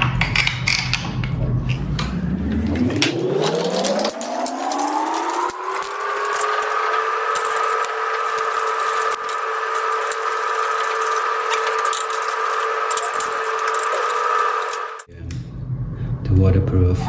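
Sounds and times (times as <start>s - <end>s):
small electric motor running: 2.6s - 15.1s.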